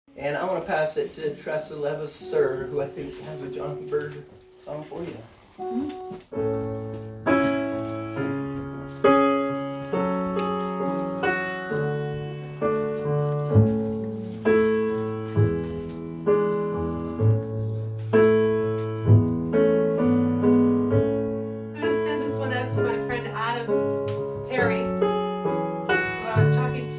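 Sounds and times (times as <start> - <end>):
piano chords over bass line: 5.6 - 26.9.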